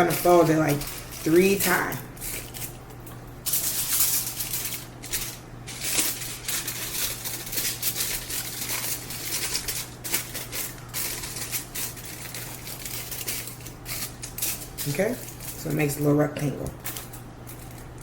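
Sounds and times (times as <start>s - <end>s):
aluminum foil crinkling: 6.3s - 15.7s.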